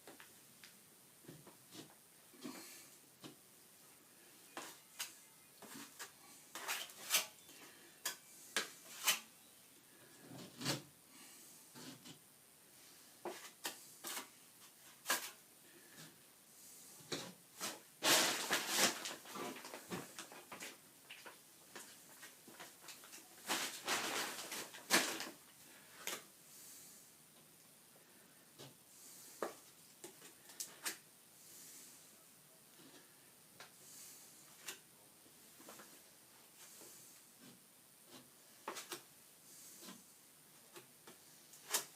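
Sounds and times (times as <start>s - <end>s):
plastering tool clicking and scraping: 5.0s - 7.4s, 8.0s - 9.3s.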